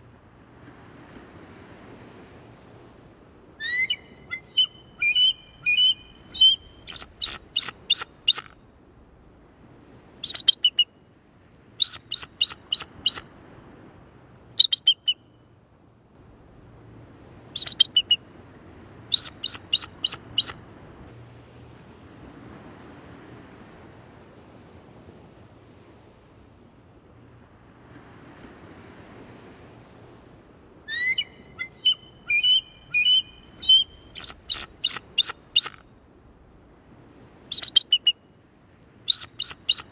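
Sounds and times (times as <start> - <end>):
eagle chittering calls: 3.6 - 8.5, 10.2 - 10.8, 11.8 - 13.2, 14.6 - 15.2, 17.6 - 18.2, 19.1 - 20.5, 30.9 - 35.8, 37.5 - 38.2, 39.1 - 39.9.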